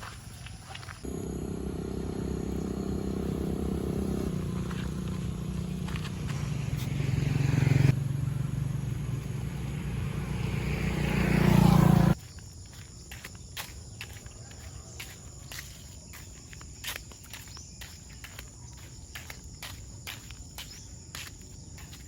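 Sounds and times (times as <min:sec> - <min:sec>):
crickets: 0:00.0 - 0:22.0
vehicle engine running: 0:01.0 - 0:12.2.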